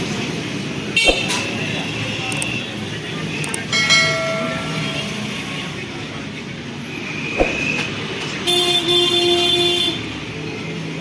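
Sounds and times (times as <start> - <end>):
background traffic noise: 0.0 - 11.0
vehicle horn: 8.4 - 10.1.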